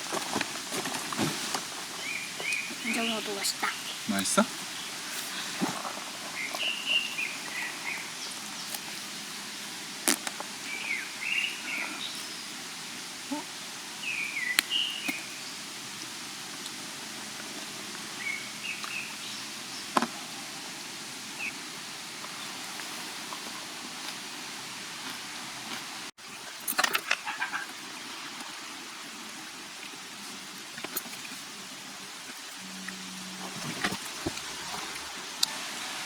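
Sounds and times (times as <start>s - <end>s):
steady outdoor hiss: 0.0s - 36.0s
small birds chirping: 1.9s - 16.2s, 17.8s - 20.5s.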